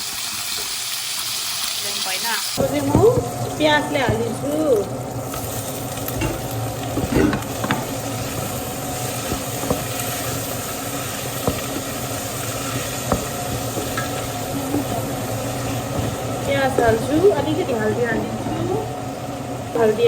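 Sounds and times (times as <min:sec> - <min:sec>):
meat sizzling in a pan: 0:00.0 - 0:18.1
utensil tapping and scraping pan: 0:06.1 - 0:18.6.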